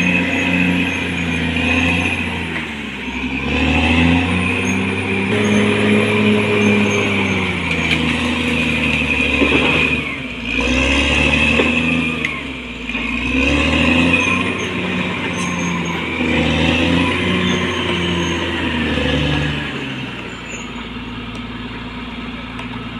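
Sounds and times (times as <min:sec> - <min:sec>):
bulldozer diesel engine: 0:00.0 - 0:22.9.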